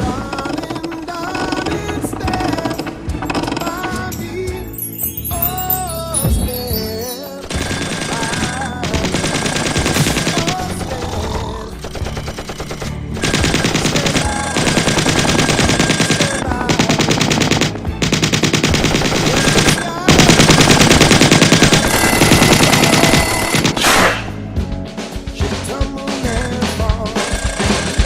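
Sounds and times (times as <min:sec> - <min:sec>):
alarm clock bell ringing: 0:03.3 - 0:07.8.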